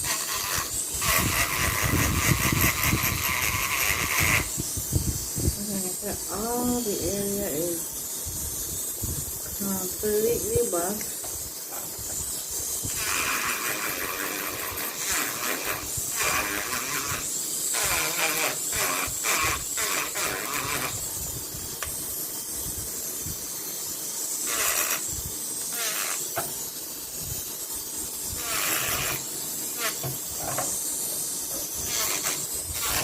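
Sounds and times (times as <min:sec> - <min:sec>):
scratchy rubbing on metal: 0:00.0 - 0:04.8, 0:11.6 - 0:21.1, 0:24.4 - 0:26.4, 0:28.2 - 0:33.0.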